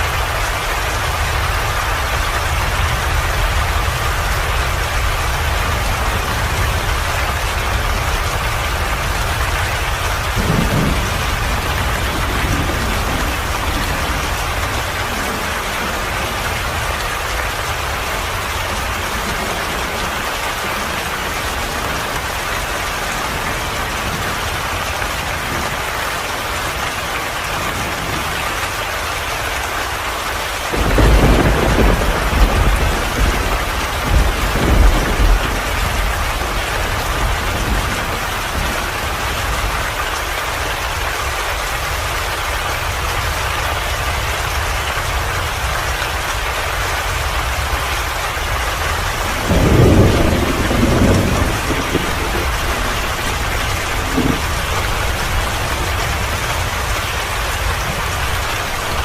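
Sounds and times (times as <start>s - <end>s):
thunder rumbling: 0.0s - 29.0s, 30.4s - 59.0s
steady rain falling: 0.0s - 59.0s.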